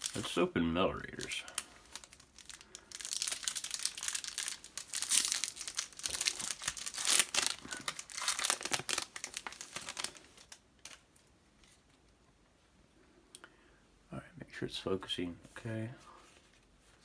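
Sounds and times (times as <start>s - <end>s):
foil wrapper tearing and crinkling: 0.0s - 0.4s, 1.0s - 11.0s.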